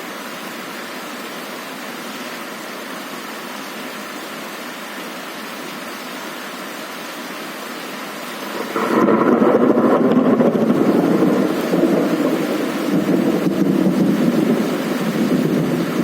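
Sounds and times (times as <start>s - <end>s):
heavy rain: 0.0s - 16.0s
rolling thunder: 8.5s - 16.0s.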